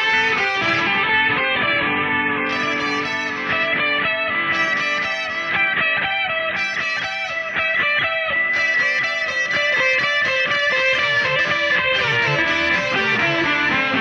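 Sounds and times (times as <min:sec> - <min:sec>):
quick plucked guitar notes: 0:00.0 - 0:14.0.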